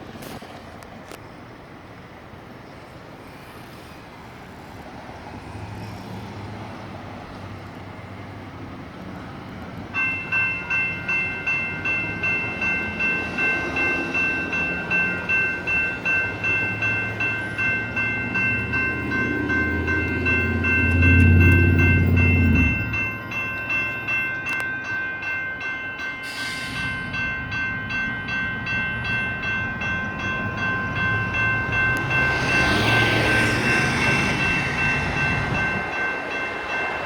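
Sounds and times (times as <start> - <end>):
road traffic: 0.0 - 37.0
wind: 0.0 - 37.0
electronic crossing bells ringing: 9.9 - 37.0.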